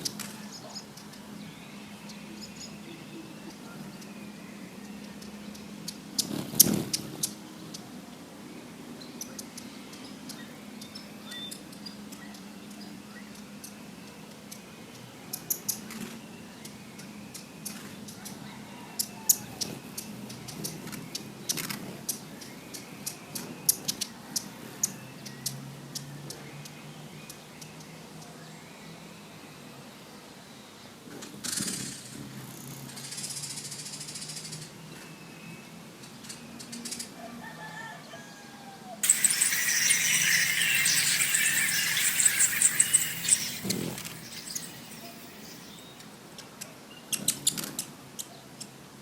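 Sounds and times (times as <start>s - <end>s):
hummingbird chip notes: 39.0s - 46.0s.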